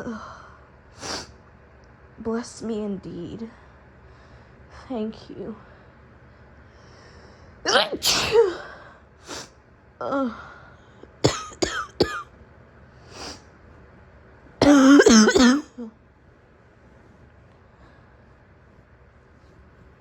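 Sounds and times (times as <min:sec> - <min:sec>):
woman coughing: 0:07.7 - 0:08.7, 0:11.2 - 0:12.3, 0:14.6 - 0:15.9.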